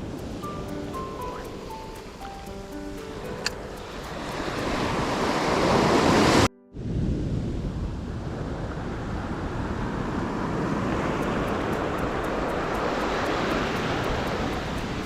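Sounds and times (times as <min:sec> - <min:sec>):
wind buffeting microphone: 0:00.0 - 0:15.0
waves washing up pebble beach: 0:03.2 - 0:06.5, 0:09.8 - 0:15.0.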